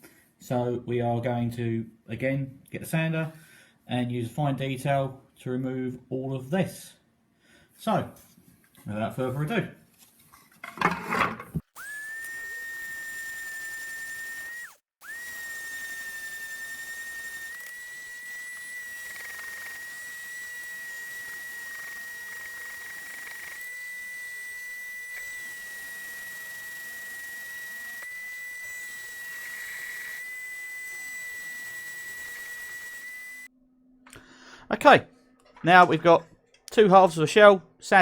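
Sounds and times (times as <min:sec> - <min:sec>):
electric sander motor whining: 0:11.8 - 0:33.5.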